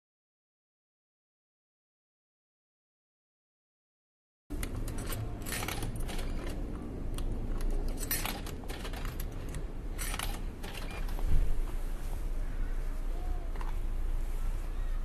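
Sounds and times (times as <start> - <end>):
coins clinking in vending machine: 4.5 - 11.2
low steady hum: 4.5 - 15.0.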